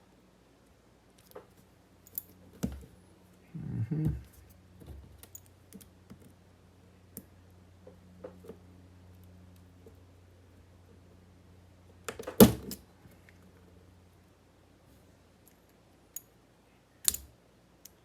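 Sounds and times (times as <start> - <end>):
low electrical hum: 0.0 - 18.0
handling knocks: 2.6 - 3.0
metal clicks of lock picking: 17.0 - 18.0.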